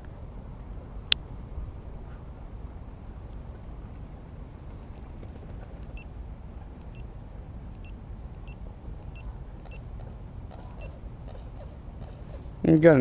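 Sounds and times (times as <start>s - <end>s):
low outdoor rumble: 0.0s - 13.0s.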